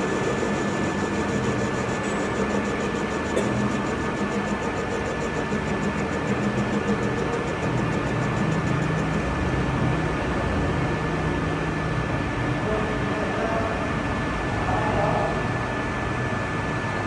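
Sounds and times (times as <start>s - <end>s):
metal lathe humming: 0.0s - 9.5s
high machine whine: 0.0s - 17.0s.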